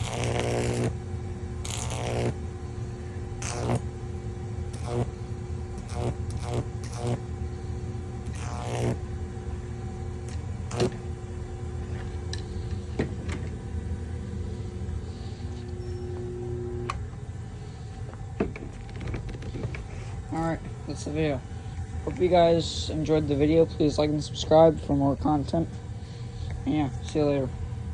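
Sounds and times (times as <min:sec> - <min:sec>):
electric arcing bursts: 0:00.0 - 0:02.5, 0:03.3 - 0:04.0, 0:04.6 - 0:07.4, 0:08.2 - 0:09.2, 0:10.2 - 0:11.1
transformer humming: 0:00.0 - 0:27.9.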